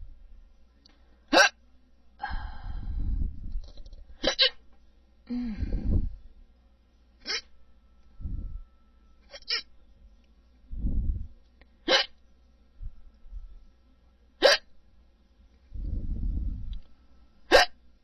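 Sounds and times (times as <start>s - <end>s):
low muffled rumbles: 2.2s - 4.2s, 5.3s - 6.6s, 8.1s - 8.8s, 10.0s - 11.4s, 12.7s - 13.7s, 15.7s - 17.1s
person hiccuping: 4.2s - 4.6s, 7.2s - 7.5s, 11.9s - 12.1s.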